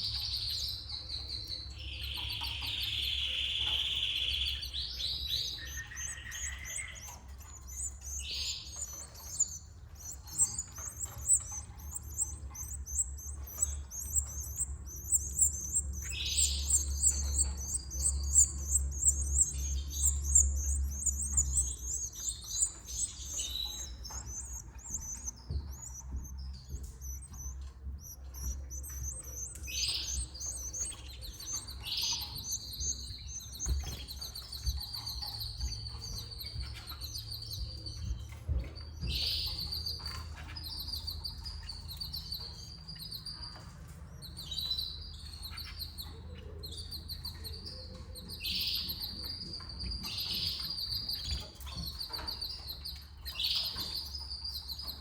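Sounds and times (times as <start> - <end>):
canaries chirping: 0.0 - 55.0
low hum: 4.6 - 38.1.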